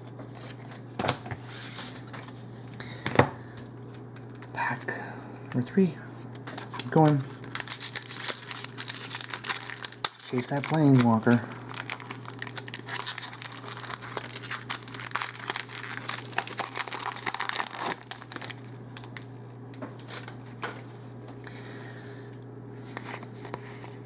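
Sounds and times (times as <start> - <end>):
steady low hum: 0.0 - 24.0
foil wrapper tearing and crinkling: 4.0 - 4.9, 6.4 - 19.3, 20.0 - 20.6.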